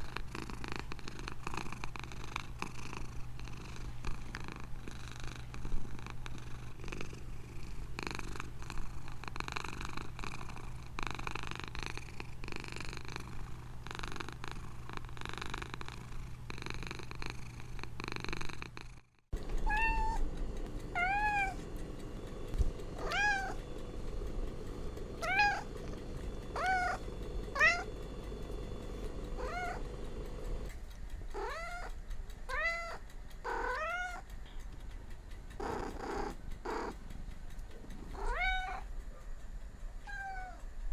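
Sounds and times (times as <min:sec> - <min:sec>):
cat purring: 0:00.0 - 0:40.9
cat meowing: 0:19.5 - 0:20.3, 0:20.9 - 0:21.6, 0:23.0 - 0:23.6, 0:25.2 - 0:25.8, 0:26.6 - 0:27.9, 0:29.4 - 0:29.8, 0:31.4 - 0:34.2, 0:38.2 - 0:38.9, 0:40.0 - 0:40.6.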